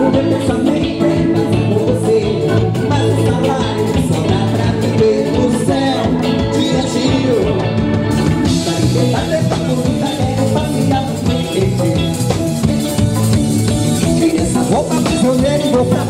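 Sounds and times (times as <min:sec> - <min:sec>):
people singing: 0:00.0 - 0:12.2
live carnival band music: 0:00.0 - 0:16.0.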